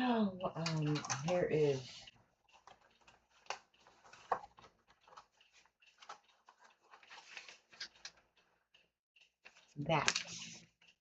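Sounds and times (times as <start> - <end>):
packaging rustling and clicking: 2.5 - 8.5.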